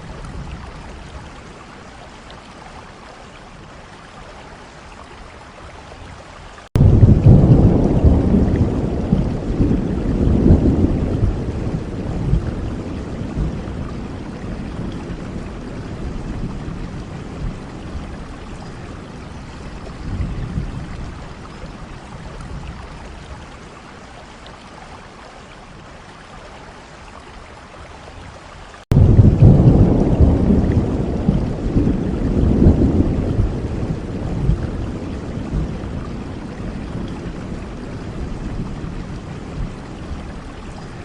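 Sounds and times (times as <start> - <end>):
steady rain: 0.0 - 41.0
rolling thunder: 6.8 - 21.4, 28.9 - 40.6.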